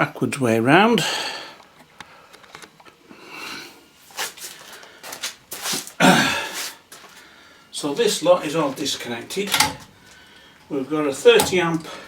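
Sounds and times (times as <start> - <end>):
rustling and handling noise: 3.9 - 12.0
light clicks and knocks: 9.4 - 10.2, 11.3 - 12.0.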